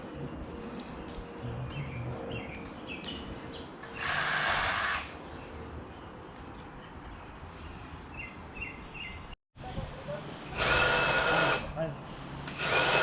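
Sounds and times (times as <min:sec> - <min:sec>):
small birds chirping: 0:00.8 - 0:04.2, 0:05.1 - 0:09.4
outdoor background hiss: 0:02.3 - 0:13.0.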